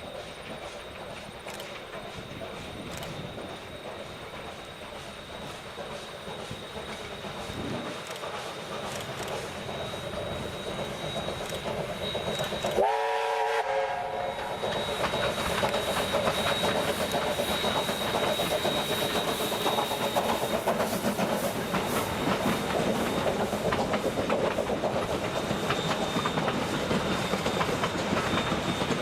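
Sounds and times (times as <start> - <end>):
train wheels clattering over rails: 0.0 - 13.5, 14.3 - 29.0
steam whistle blast: 12.0 - 20.5.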